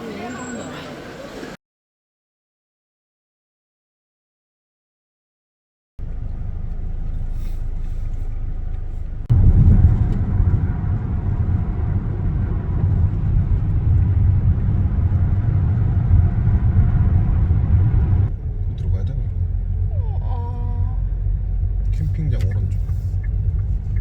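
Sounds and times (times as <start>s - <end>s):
car road and engine rumble: 6.0s - 24.0s.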